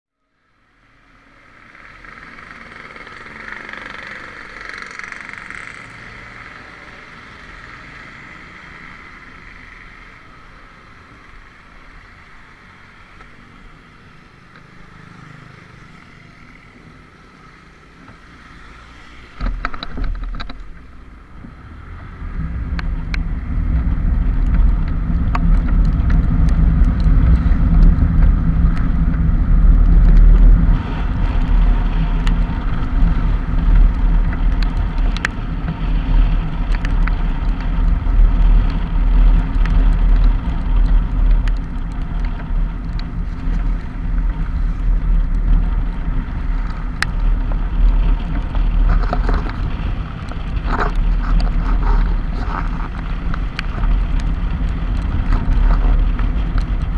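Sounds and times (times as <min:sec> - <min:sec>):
wind rumble on microphone: 0:19.4 - 0:56.9
raindrop clicks: 0:22.7 - 0:56.9.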